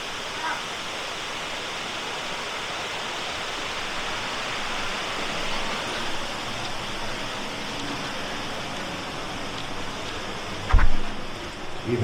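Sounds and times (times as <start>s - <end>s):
creek water rushing: 0.0s - 12.0s.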